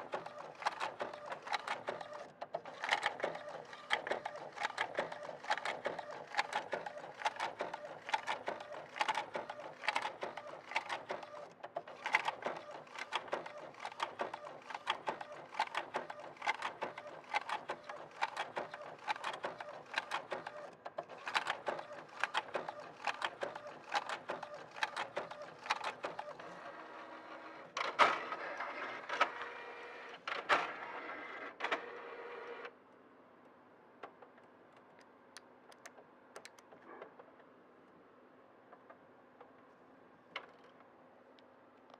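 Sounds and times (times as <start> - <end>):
printer motor: 0.0 - 32.7.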